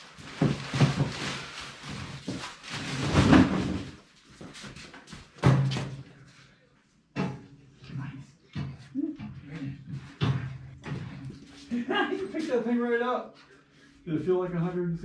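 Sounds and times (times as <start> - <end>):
rustling packing: 0.0 - 5.1.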